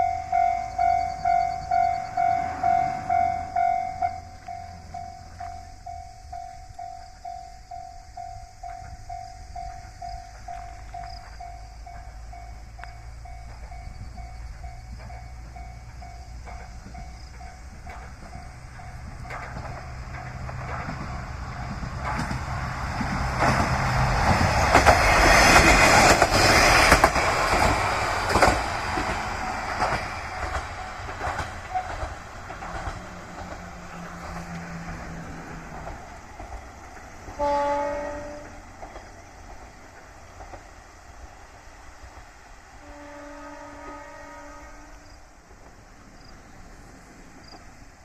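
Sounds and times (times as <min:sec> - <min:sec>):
level crossing warning bell: 0:00.0 - 0:21.9
railcar engine humming: 0:00.0 - 0:48.0
train wheels clacking on rail joints: 0:08.6 - 0:41.2
train horn blast: 0:31.6 - 0:32.2, 0:37.2 - 0:38.8, 0:42.8 - 0:45.2.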